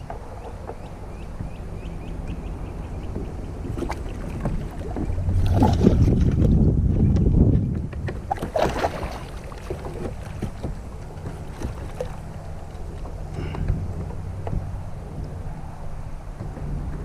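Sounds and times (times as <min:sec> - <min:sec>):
water sloshing against kayak: 0:00.0 - 0:17.0
wind on microphone: 0:00.0 - 0:17.0
splashes and knocks: 0:03.6 - 0:06.6, 0:07.2 - 0:14.7.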